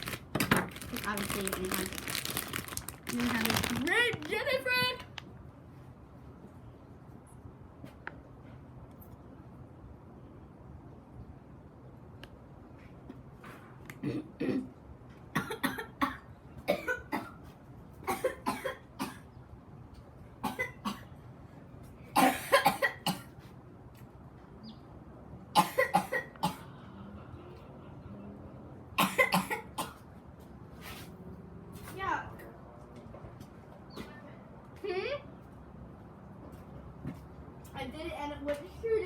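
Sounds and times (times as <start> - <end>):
young person coughing and choking: 14.0 - 14.7, 15.3 - 17.4, 18.0 - 19.2, 20.4 - 21.1, 22.2 - 23.3, 25.6 - 26.7, 29.0 - 30.0.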